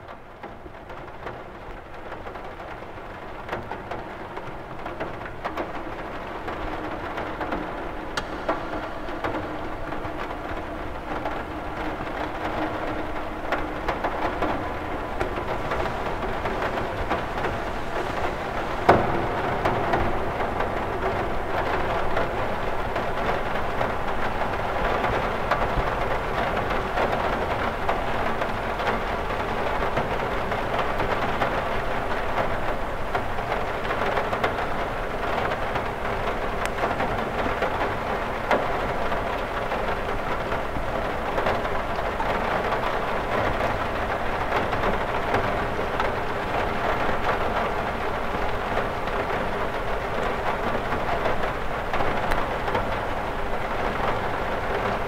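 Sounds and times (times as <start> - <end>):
rain on a window: 0.0 - 55.0.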